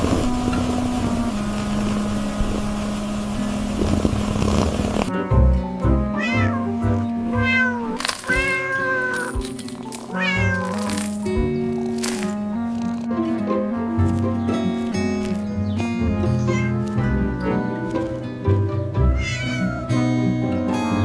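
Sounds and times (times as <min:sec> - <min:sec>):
steady rushing noise: 0:00.0 - 0:05.1
background music: 0:00.0 - 0:21.0
cat meowing: 0:06.1 - 0:09.4, 0:10.1 - 0:11.0, 0:16.2 - 0:17.4, 0:19.0 - 0:20.4.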